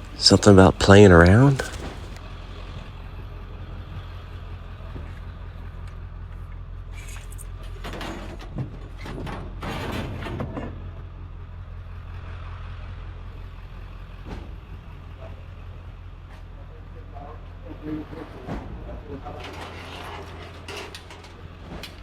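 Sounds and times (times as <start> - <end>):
scraping and clattering: 18.2 - 22.0.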